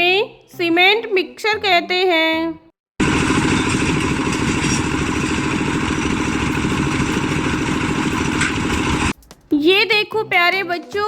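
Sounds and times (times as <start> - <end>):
cement mixer engine running: 3.0 - 9.2
rapid even clatter: 3.3 - 9.5.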